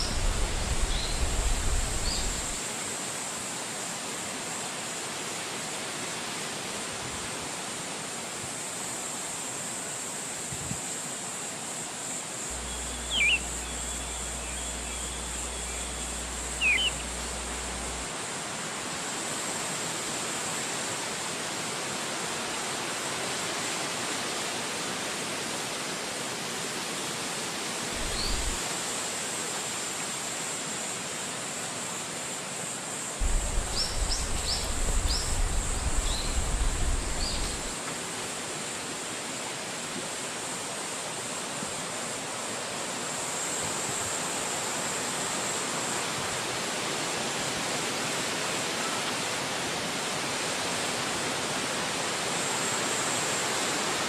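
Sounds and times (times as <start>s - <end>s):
wind buffeting microphone: 0.0s - 2.6s, 28.0s - 28.6s, 33.2s - 37.8s
wind through trees: 0.0s - 54.0s
bird chirping: 12.5s - 18.0s, 28.0s - 28.6s, 33.2s - 37.7s.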